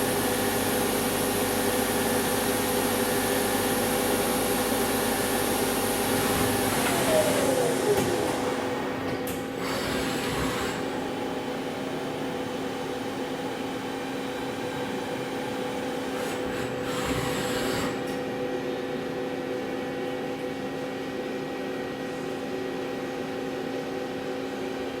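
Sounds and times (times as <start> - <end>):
lathe machine hum: 0.0 - 18.1.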